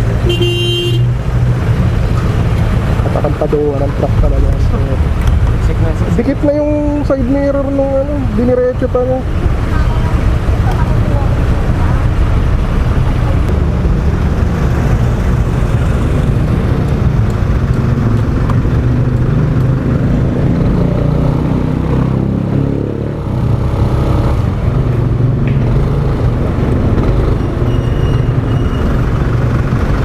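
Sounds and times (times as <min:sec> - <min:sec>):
wind rumble on microphone: 0:09.2 - 0:27.6.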